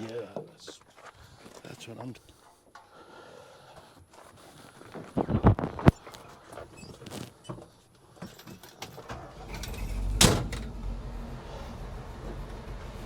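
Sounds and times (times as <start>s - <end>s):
vehicle engine rumbling: 9.0s - 13.0s
door shutting knock: 10.2s - 10.7s.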